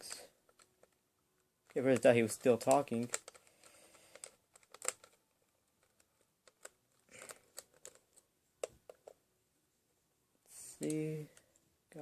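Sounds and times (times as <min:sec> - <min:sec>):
plastic parts clicking: 0:00.0 - 0:09.2.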